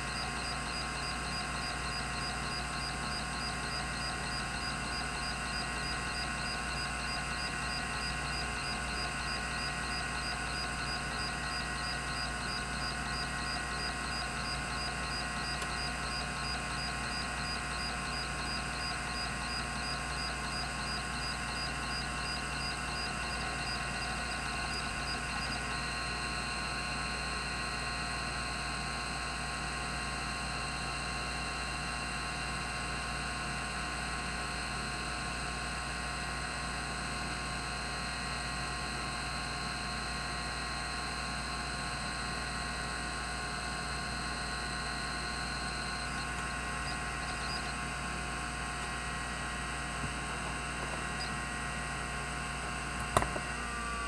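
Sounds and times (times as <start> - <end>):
hard drive whine: 0.0 - 54.0
hard drive click: 0.1 - 25.9, 44.6 - 53.6.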